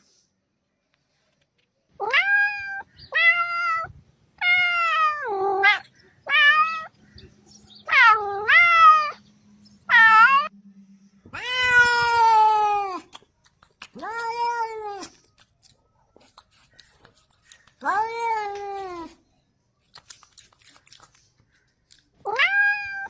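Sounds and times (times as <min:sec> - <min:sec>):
cat meowing: 0:02.0 - 0:06.9, 0:07.8 - 0:09.2, 0:09.9 - 0:10.5, 0:11.3 - 0:13.2, 0:13.9 - 0:15.2, 0:17.8 - 0:19.2, 0:22.2 - 0:23.0.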